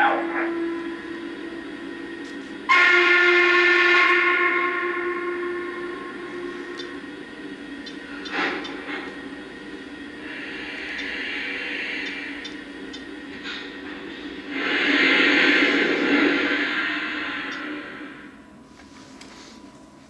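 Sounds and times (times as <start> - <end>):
steam whistle blast: 0.0 - 7.2, 14.0 - 18.4
steam hiss: 0.4 - 18.4.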